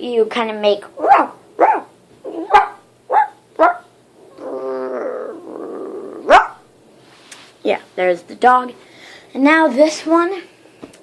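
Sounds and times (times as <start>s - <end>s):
person imitating dog barks: 1.0s - 3.9s.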